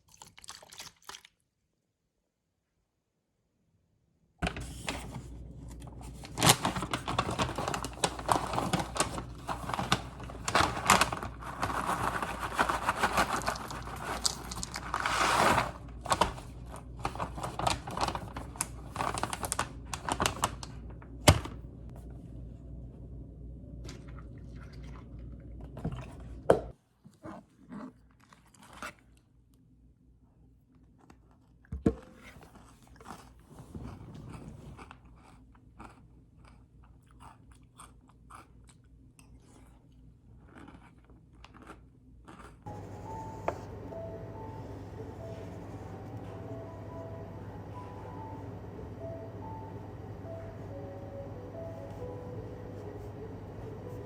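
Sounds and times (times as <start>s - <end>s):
objects rustling and crinkling: 4.4s - 21.6s
steady low hum: 4.4s - 26.8s, 42.7s - 54.0s.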